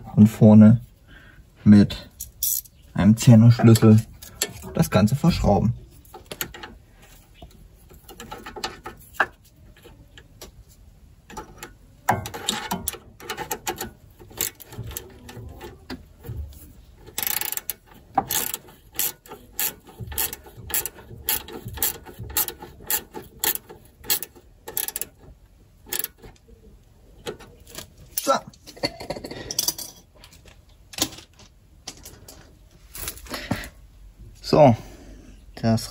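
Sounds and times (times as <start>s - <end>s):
ratchet wrench clicking: 12.2s - 15.7s, 17.1s - 25.2s, 25.9s - 26.2s.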